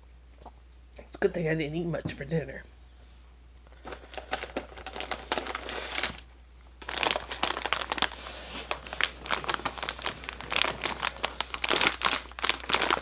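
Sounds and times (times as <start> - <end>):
plastic packaging crinkling: 3.7 - 13.0.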